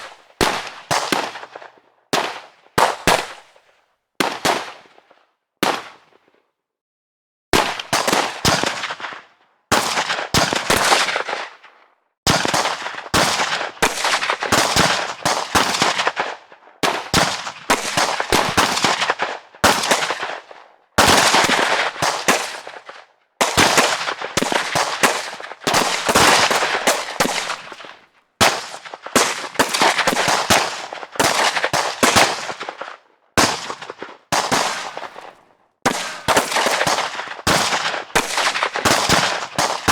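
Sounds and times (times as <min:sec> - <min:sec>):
automatic gunfire bursts: 0:21.0 - 0:22.8, 0:23.4 - 0:35.3, 0:35.9 - 0:39.9.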